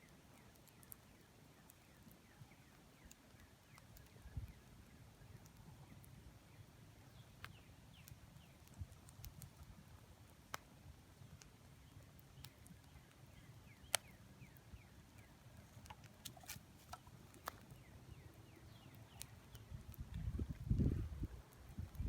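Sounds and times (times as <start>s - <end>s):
fire crackling and popping: 0.1s - 22.0s
low rumble of flames: 3.8s - 22.0s.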